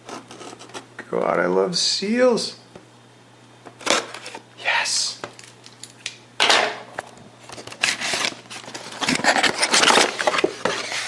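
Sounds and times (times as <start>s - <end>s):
plastic packaging crinkling: 7.6s - 11.0s.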